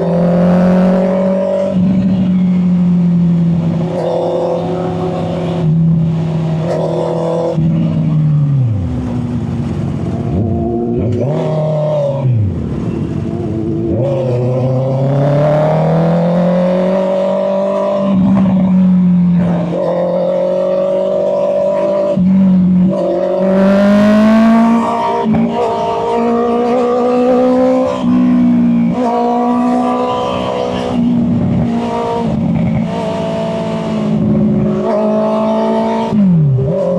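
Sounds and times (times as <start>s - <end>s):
motorcycle engine revving: 0.0s - 36.9s.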